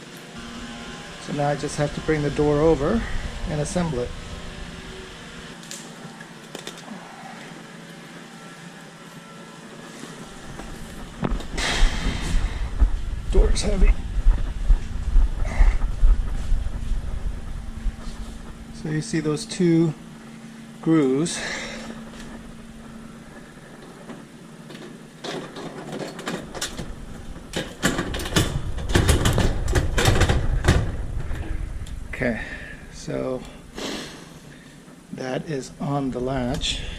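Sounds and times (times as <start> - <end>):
steady background hiss: 0.0 - 36.9
heavy thuds: 10.6 - 18.8.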